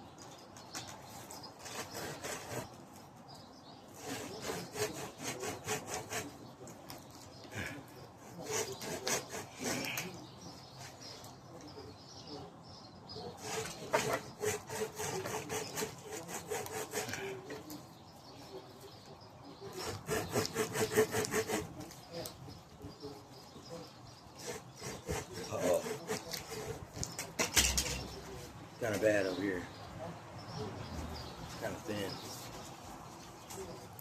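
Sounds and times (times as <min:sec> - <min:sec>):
blade sawing into bark: 0:00.8 - 0:03.0, 0:03.9 - 0:06.6, 0:07.6 - 0:11.2, 0:13.2 - 0:17.8, 0:19.6 - 0:22.4, 0:23.6 - 0:29.8.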